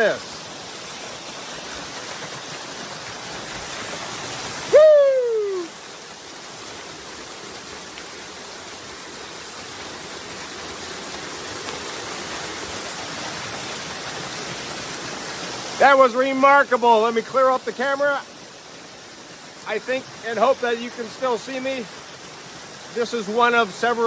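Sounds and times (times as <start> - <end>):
waterfall pouring: 0.0 - 24.0
man shouting: 4.7 - 5.7.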